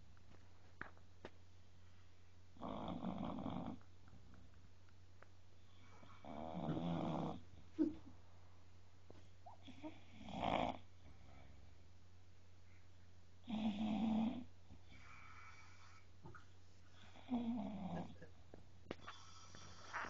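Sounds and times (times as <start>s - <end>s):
dog snoring: 2.6s - 3.8s, 5.8s - 7.6s, 9.5s - 11.5s, 13.4s - 16.0s, 17.0s - 18.2s, 19.0s - 20.0s.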